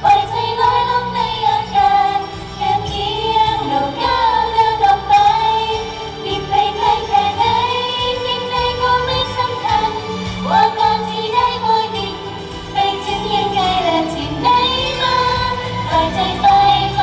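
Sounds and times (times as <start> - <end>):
backing track with bass: 0.0 - 17.0
women singing pop song: 0.0 - 17.0.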